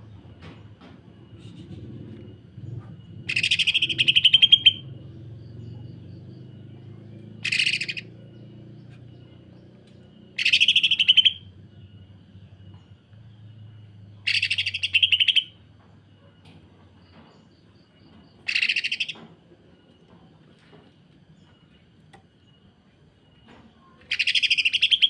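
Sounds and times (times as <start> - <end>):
faint low hum: 0.0 - 24.8
bird harsh chattering rattle: 3.3 - 4.8, 7.4 - 8.1, 10.4 - 11.4, 14.3 - 15.5, 18.5 - 19.2, 24.1 - 25.0.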